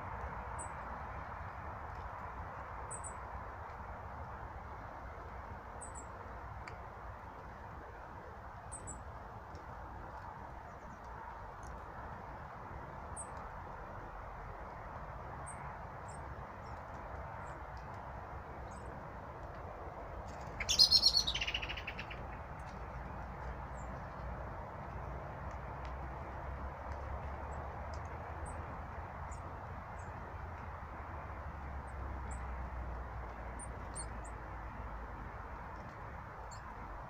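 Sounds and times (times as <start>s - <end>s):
small birds chirping: 20.3s - 22.8s.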